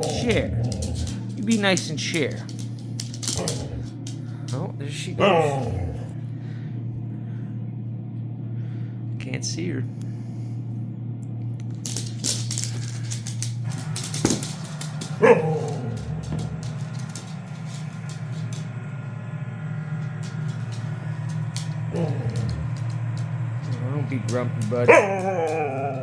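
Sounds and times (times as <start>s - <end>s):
dog barking: 0.0s - 1.3s, 3.4s - 4.0s, 5.1s - 6.2s, 13.7s - 18.4s, 20.5s - 23.0s, 23.6s - 26.0s
steady low hum: 0.0s - 26.0s.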